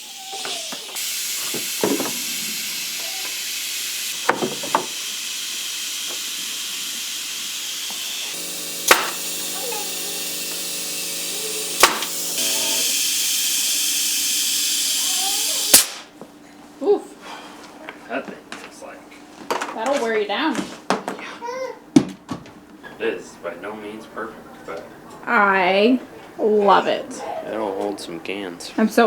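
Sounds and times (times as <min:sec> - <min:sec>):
loud machine hiss: 0:00.0 - 0:16.2
nail gun firing: 0:04.2 - 0:05.0, 0:08.3 - 0:12.8, 0:15.0 - 0:16.1.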